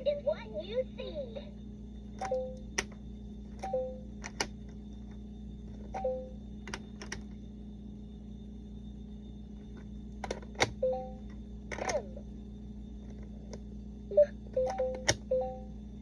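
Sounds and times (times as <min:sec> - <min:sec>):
steady low hum: 0:00.0 - 0:16.0
plastic pieces clicking: 0:03.6 - 0:04.6, 0:06.7 - 0:07.3, 0:11.7 - 0:12.0.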